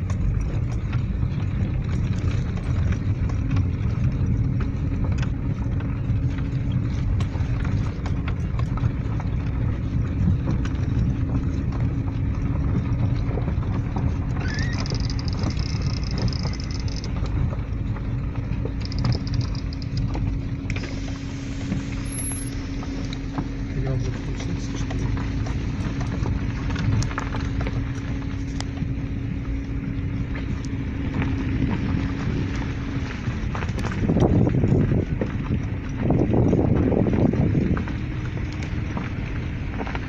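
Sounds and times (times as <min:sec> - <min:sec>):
car interior road rumble: 0:00.0 - 0:40.0
faint high whine: 0:14.4 - 0:17.2, 0:18.7 - 0:25.3.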